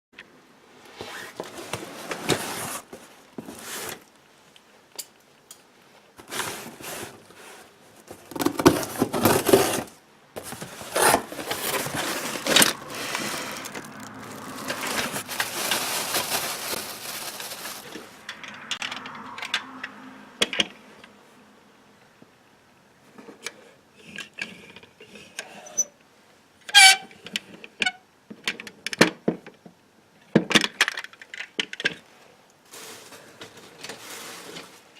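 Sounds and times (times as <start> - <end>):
packaging rustling: 6.2 - 18.2
small metal toy cars clicking: 18.2 - 20.7.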